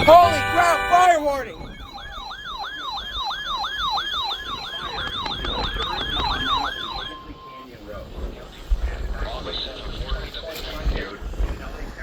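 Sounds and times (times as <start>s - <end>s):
siren yelping: 0.0s - 7.6s
short steady beep: 0.0s - 7.7s.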